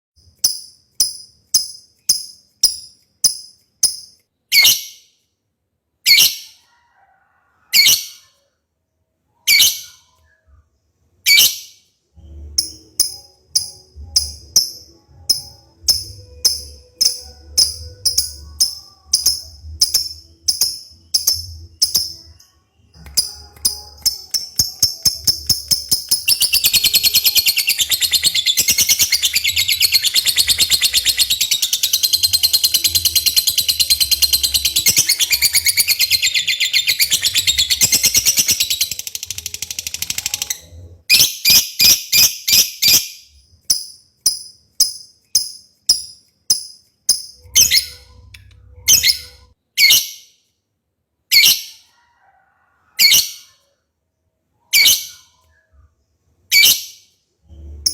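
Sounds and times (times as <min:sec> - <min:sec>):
bird chattering trill: 0:23.0 - 0:40.6.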